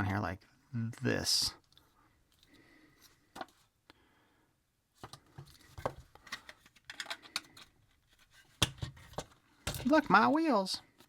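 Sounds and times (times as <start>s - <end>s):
plastic parts clicking and tapping: 5.0s - 7.8s, 8.6s - 10.3s.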